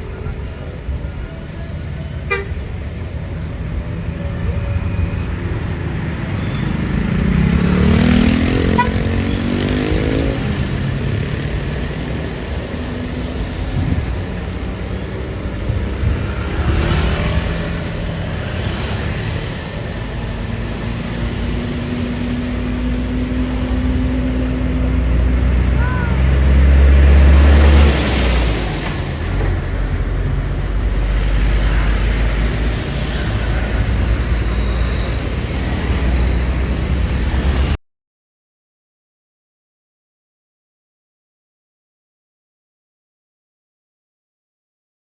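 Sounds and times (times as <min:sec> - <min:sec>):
heavy vehicles passing: 0:00.0 - 0:37.8
engine revving: 0:06.4 - 0:15.2, 0:15.8 - 0:37.8.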